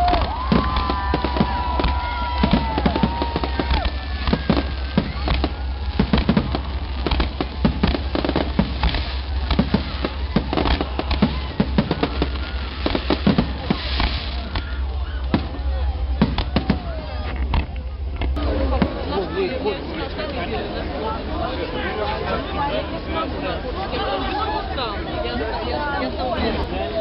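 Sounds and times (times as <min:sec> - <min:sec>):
fireworks bangs and crackling: 0:00.0 - 0:19.4.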